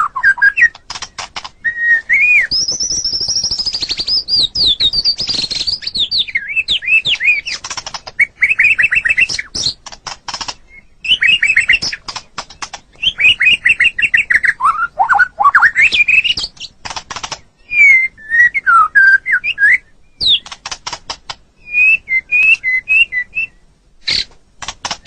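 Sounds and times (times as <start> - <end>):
bird singing whistled notes: 0.0 - 0.8, 1.5 - 7.6, 8.2 - 9.8, 10.6 - 12.0, 13.0 - 16.7, 17.6 - 20.5, 21.6 - 24.3
bird sharp clicking notes: 0.1 - 17.9, 20.2 - 23.0, 24.1 - 25.0.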